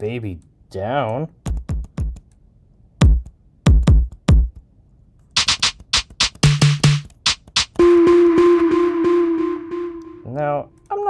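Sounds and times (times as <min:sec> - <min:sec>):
electronic kick drum hits: 0:03.0 - 0:04.5, 0:05.4 - 0:10.3
snappy snare hits: 0:03.0 - 0:04.6, 0:05.4 - 0:07.8.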